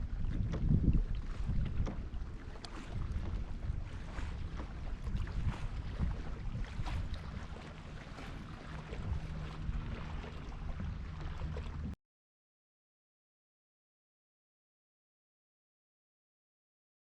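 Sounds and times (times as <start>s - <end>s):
water splashing against hull: 0.0s - 12.0s
wind buffeting microphone: 0.0s - 12.0s.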